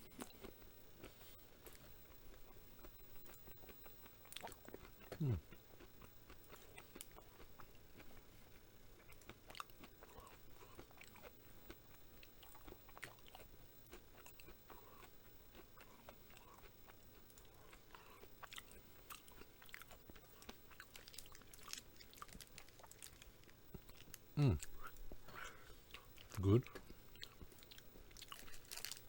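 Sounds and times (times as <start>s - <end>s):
person chewing crunchy food: 0.1s - 29.0s.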